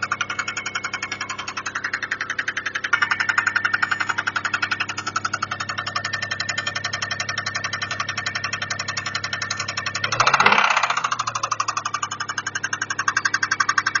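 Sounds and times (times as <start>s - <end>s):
car engine idling with knock: 0.0s - 14.0s.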